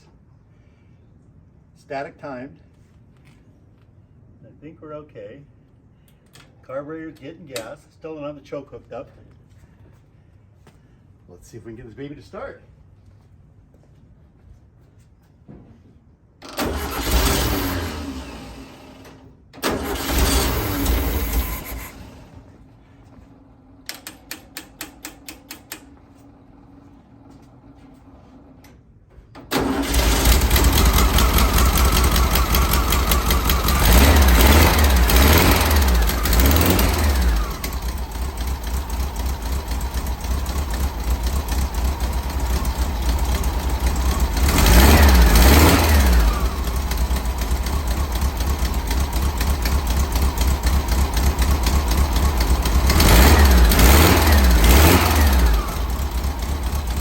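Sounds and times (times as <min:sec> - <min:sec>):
car engine starting and revving: 0:16.4 - 0:22.6, 0:29.5 - 0:57.0.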